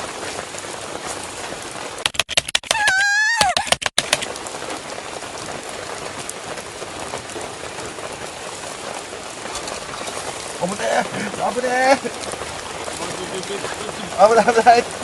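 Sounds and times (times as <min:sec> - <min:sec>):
rain pattering: 0:00.0 - 0:15.0
sharp clicks: 0:02.0 - 0:04.4.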